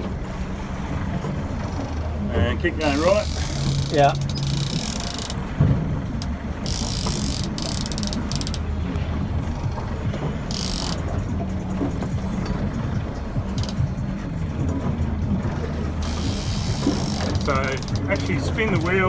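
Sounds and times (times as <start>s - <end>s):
boat engine humming: 0.0s - 19.0s
fishing reel ratcheting: 2.8s - 5.4s, 6.2s - 8.6s, 10.5s - 11.1s, 13.6s - 13.9s, 16.0s - 19.0s.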